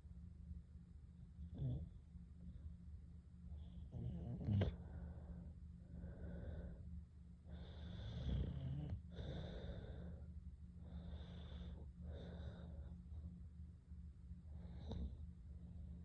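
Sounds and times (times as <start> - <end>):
low hum: 0.0 - 16.0
girl snoring lightly: 3.9 - 5.0.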